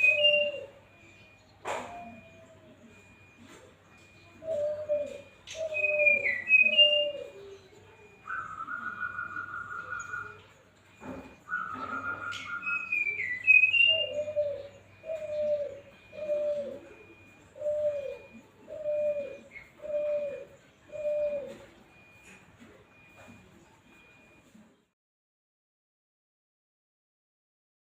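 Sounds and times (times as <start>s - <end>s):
bird singing whistles: 11.4s - 14.2s.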